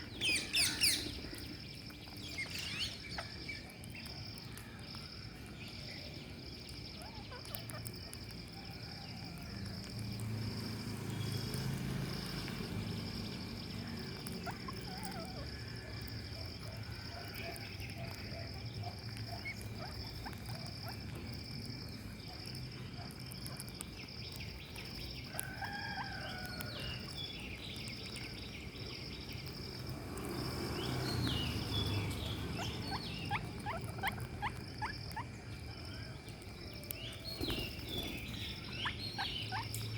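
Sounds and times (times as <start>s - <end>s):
bird chirps and calls: 0.0s - 4.1s, 11.3s - 16.0s, 24.2s - 39.9s
high insect chirping: 0.0s - 39.9s.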